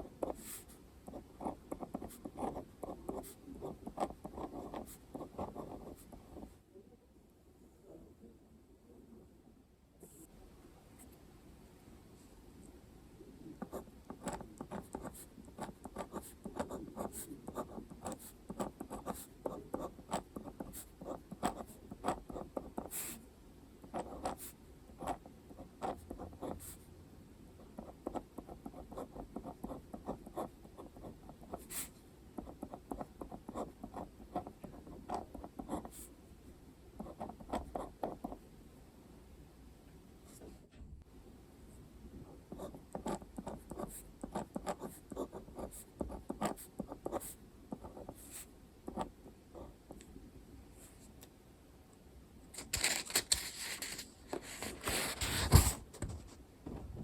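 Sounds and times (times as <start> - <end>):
pen scratching on paper: 0.0 - 6.5, 13.5 - 23.2, 23.8 - 26.8, 27.6 - 36.1, 37.0 - 38.4, 42.3 - 50.0, 52.6 - 56.4.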